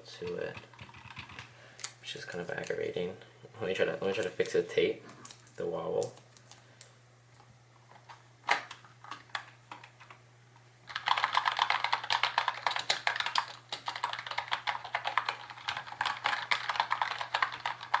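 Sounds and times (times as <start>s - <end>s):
keyboard typing: 0.6s - 1.5s, 10.9s - 18.0s.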